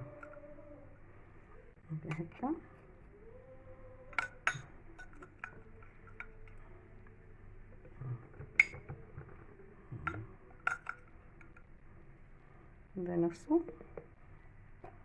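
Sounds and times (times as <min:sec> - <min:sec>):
glass jars and utensils clinking: 0:04.1 - 0:06.7, 0:07.8 - 0:11.6.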